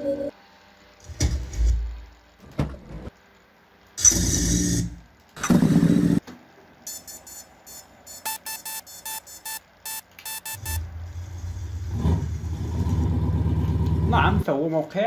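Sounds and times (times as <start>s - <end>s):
electronic beeps: 6.9s - 10.8s.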